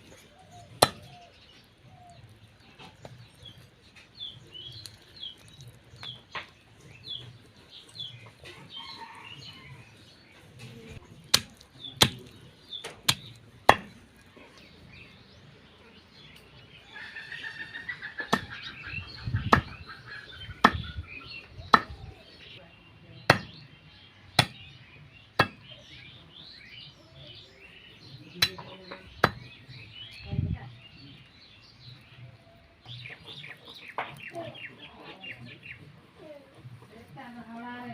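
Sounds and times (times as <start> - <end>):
small birds chirping: 0.0 - 37.9
chopping strikes: 0.8 - 1.1, 11.3 - 14.0, 23.3 - 23.6, 24.4 - 24.6, 25.4 - 25.6.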